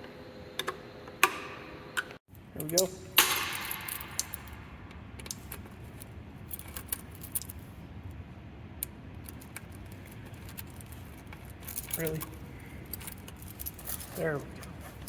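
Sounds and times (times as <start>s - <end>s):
keys jangling: 9.2s - 15.0s.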